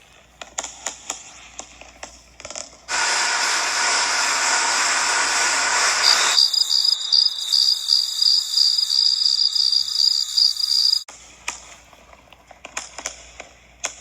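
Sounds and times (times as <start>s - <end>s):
firework jets hissing: 2.9s - 11.1s
pulsing high whistle: 5.8s - 11.1s.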